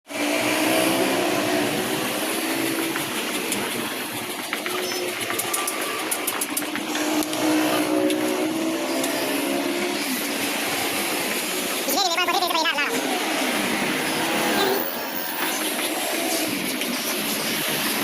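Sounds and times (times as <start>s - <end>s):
woodworking router running: 0.1s - 11.9s.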